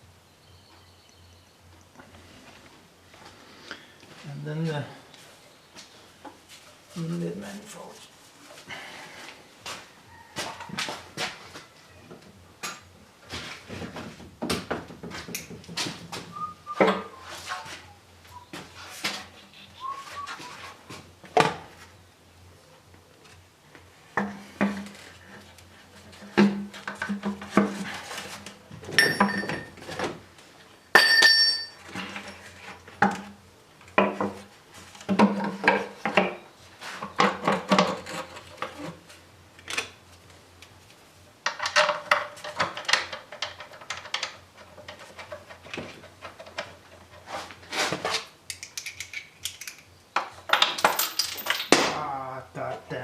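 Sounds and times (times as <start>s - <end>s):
metal engine parts clinking: 29.0s - 29.8s, 30.9s - 31.9s, 50.5s - 51.9s
sharp ringing metal strikes: 31.0s - 31.8s.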